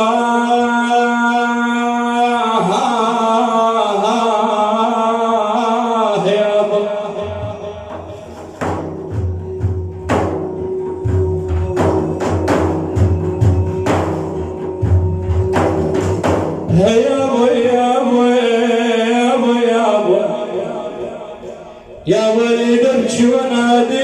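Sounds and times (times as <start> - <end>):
man singing: 0.0 - 24.0
steady held note: 7.2 - 17.7
hand drum beats: 7.2 - 17.8.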